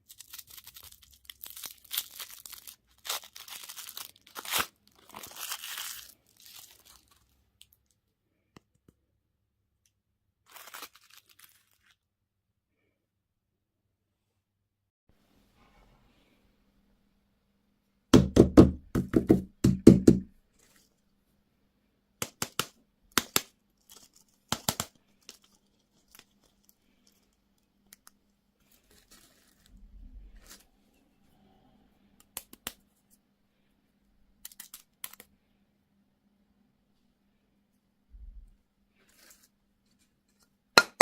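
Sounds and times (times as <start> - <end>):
plastic packaging knocks and rattles: 18.2 - 20.3, 22.2 - 25.4
plastic packaging clicks and taps: 22.2 - 23.5, 24.5 - 25.5.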